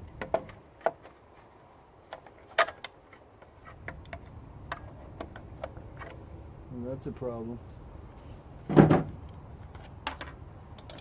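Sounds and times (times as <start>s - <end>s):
clicks and knocks handling parts: 8.7s - 11.0s.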